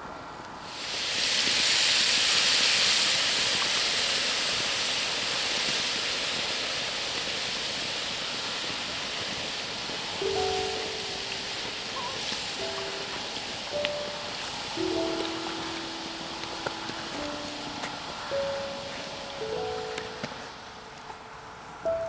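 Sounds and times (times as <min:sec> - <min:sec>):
food sizzling in a pan: 0:00.6 - 0:20.6
music notes: 0:10.2 - 0:20.9.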